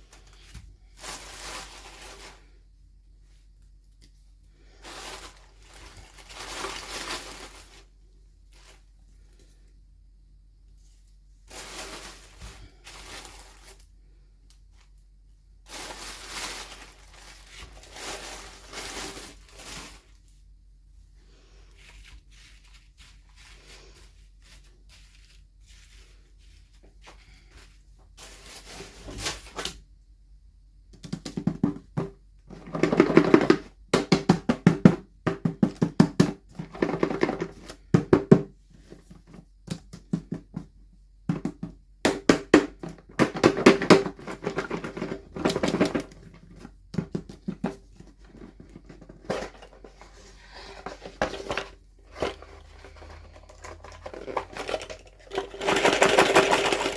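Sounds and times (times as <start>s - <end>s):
plastic packaging clicks and rattles: 42.1s - 49.9s, 50.9s - 56.9s.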